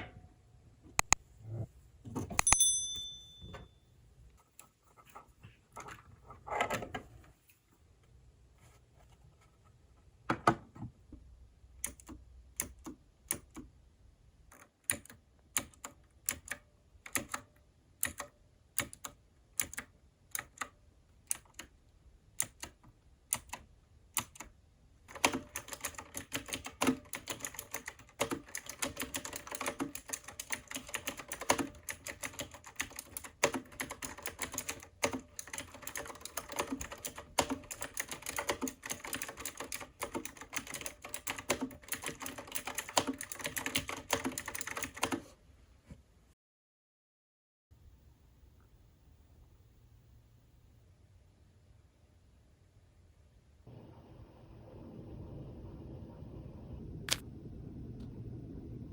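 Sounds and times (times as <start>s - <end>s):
mechanical keyboard typing: 11.8s - 13.7s, 14.5s - 21.8s, 22.4s - 45.3s.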